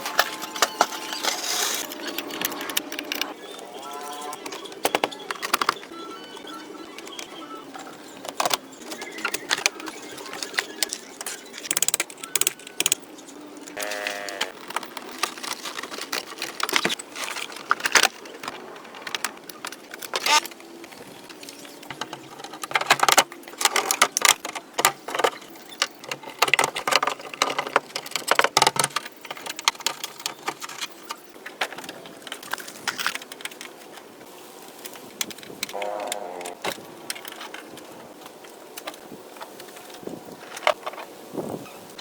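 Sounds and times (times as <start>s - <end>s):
small hard objects clattering: 0.0s - 3.3s, 13.8s - 20.3s, 21.0s - 33.8s.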